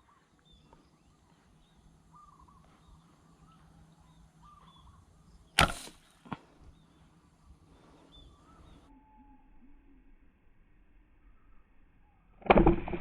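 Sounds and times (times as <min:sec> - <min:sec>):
faint chirping calls: 0:00.0 - 0:10.4
arrow smacking water: 0:05.6 - 0:06.0, 0:12.4 - 0:13.0
slingshot snap and whoosh: 0:05.6 - 0:06.2.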